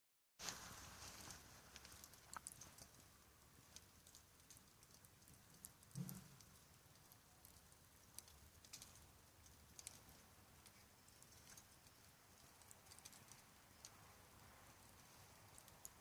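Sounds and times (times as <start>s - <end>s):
campfire crackling and popping: 0.4s - 16.0s
low hiss: 0.4s - 16.0s.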